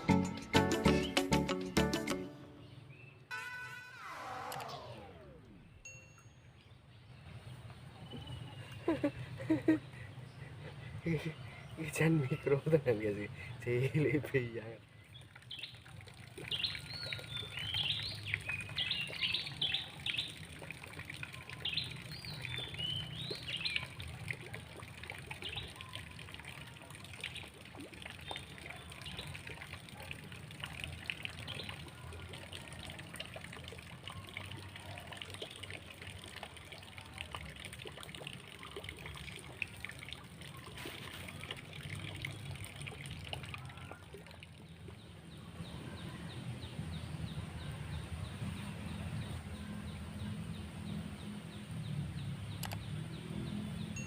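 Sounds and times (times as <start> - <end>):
river water trickling: 4.6 - 54.0
small birds chirping: 14.8 - 24.5.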